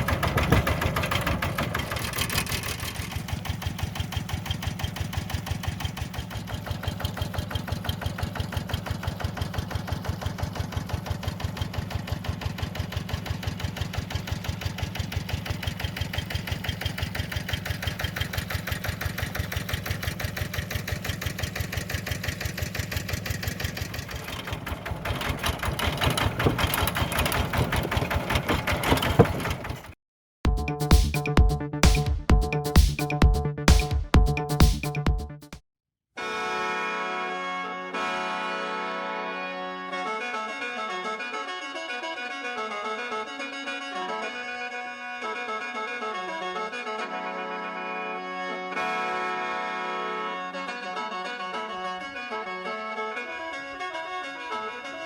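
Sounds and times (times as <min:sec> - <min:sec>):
small engine idling: 0:00.0 - 0:30.0.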